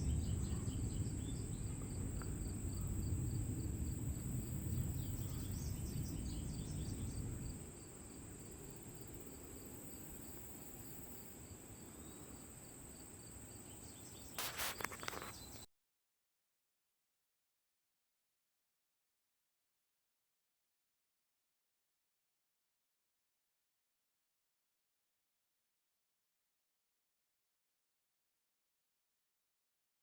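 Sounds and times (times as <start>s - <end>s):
crickets chirping: 0.0s - 15.7s
brief clatter: 14.4s - 15.7s.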